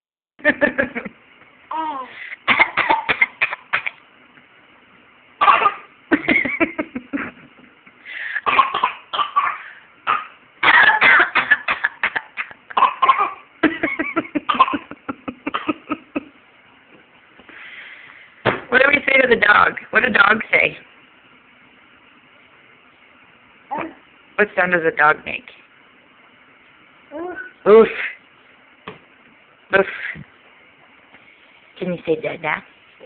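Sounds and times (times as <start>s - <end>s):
toddler pretend coughing: 1.8s - 4.0s, 5.4s - 5.9s, 8.4s - 13.4s.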